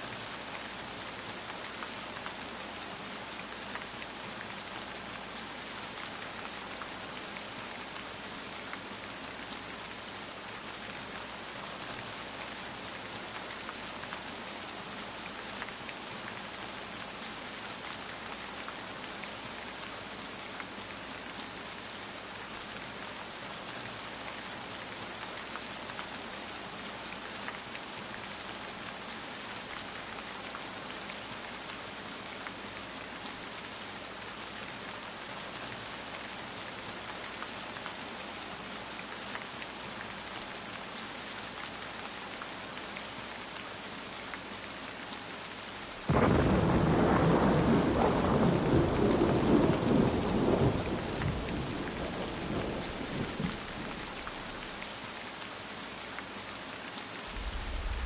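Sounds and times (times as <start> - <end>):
rain falling: 0.0 - 58.0
thunder rumbling: 46.1 - 54.5, 57.4 - 58.0.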